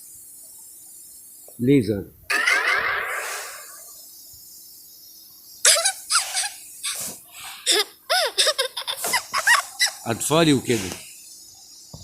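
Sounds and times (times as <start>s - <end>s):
small child giggling: 5.6s - 10.1s.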